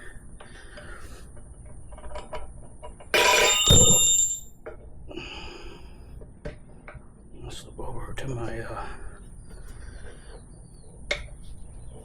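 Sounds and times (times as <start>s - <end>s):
loud ringing metal clang: 3.1s - 4.5s
metallic clinks of hand tools: 3.2s - 4.5s.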